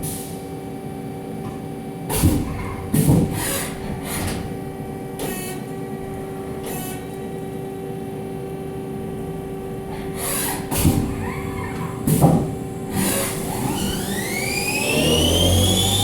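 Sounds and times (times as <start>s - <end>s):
loud bursts of machine noise: 10.2s - 16.0s
lathe machine hum: 12.6s - 16.0s.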